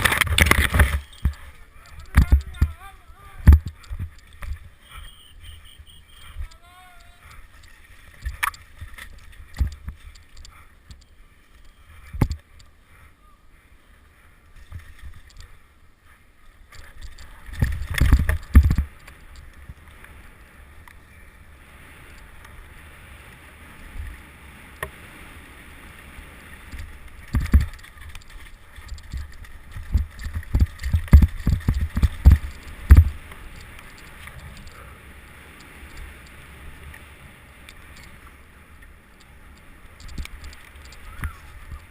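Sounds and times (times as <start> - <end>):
bike knocks and rattles: 0.0 - 1.4, 16.7 - 19.0, 27.2 - 33.2.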